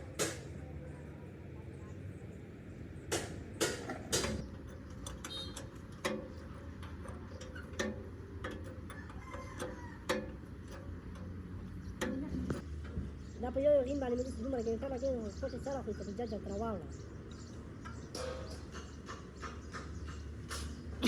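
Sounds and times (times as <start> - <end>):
tools tapping on radiator: 3.1 - 13.2, 17.3 - 20.8.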